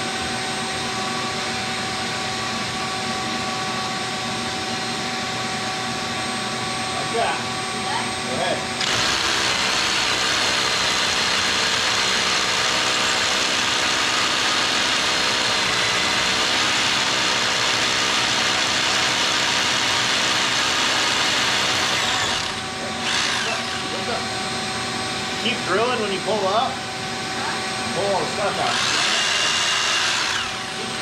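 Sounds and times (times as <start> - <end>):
rotary hammer drill into concrete: 8.8 - 24.1, 28.4 - 31.0.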